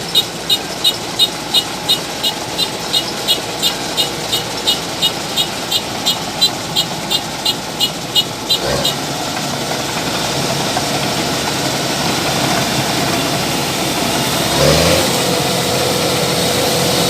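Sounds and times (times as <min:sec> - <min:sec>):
combine harvester engine running: 0:00.0 - 0:17.0.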